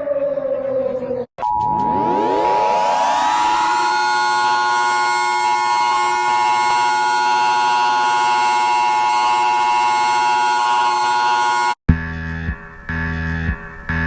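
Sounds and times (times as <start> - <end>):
alert alarm siren chord: 1.4 - 11.8.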